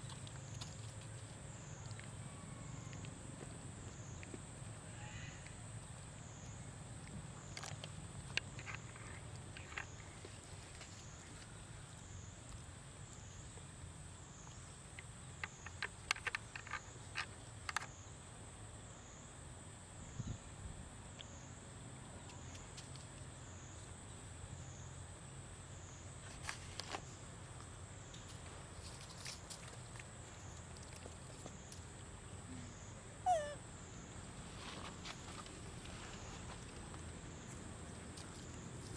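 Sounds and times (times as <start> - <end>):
faint clicks and rustles: 26.2 - 32.2.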